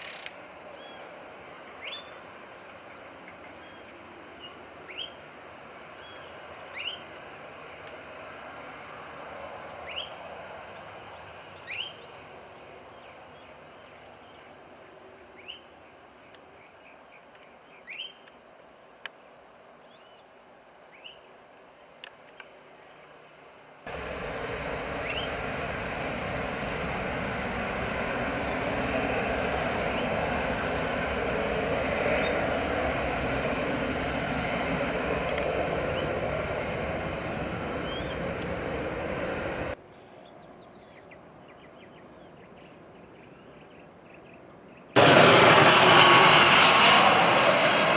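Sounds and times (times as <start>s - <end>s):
birds chirping: 11.5s - 14.6s, 23.9s - 31.1s, 31.7s - 47.9s
faint hum: 23.9s - 33.1s
aircraft engines roaring: 23.9s - 39.8s, 45.0s - 47.9s.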